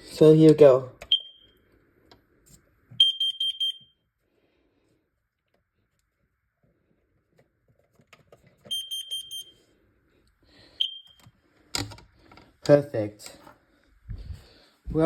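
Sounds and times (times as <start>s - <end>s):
alarm high-pitched beeps: 1.1s - 1.5s, 3.0s - 3.9s, 8.7s - 9.6s, 10.8s - 11.2s.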